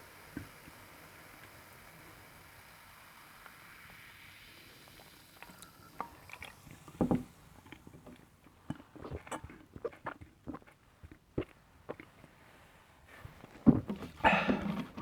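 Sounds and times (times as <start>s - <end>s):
soda fizzing hiss: 0.0s - 8.4s.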